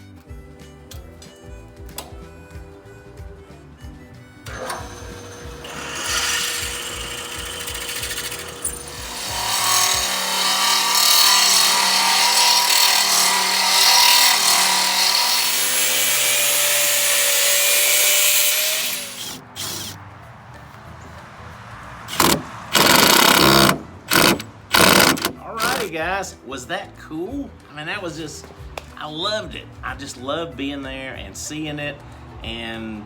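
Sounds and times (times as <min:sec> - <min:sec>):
background music: 0:00.0 - 0:33.0
power tool grinding: 0:04.5 - 0:20.0, 0:22.1 - 0:25.9.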